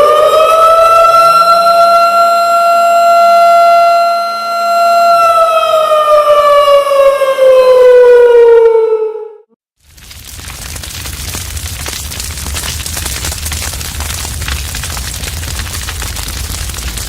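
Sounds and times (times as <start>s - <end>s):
siren winding down: 0.0s - 9.5s.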